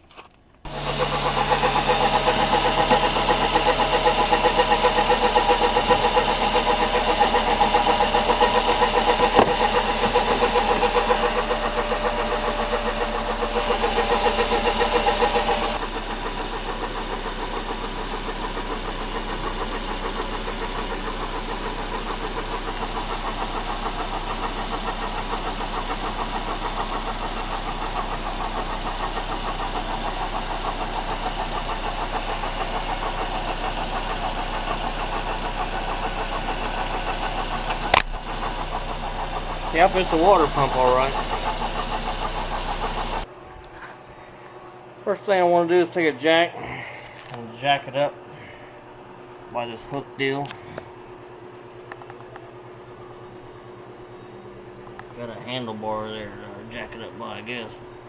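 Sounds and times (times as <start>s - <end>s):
car engine running: 0.4s - 43.4s, 47.0s - 58.0s
water pump racket: 0.6s - 43.3s.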